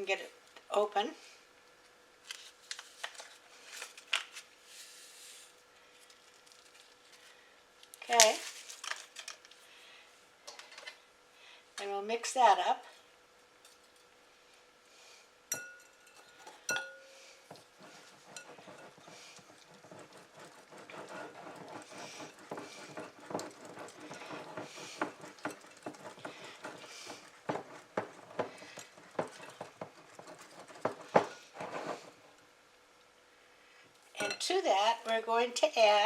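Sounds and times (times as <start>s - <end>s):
utensil clinking against bowl: 15.5s - 20.2s, 34.2s - 34.6s
utensil scraping and stirring: 15.5s - 32.5s.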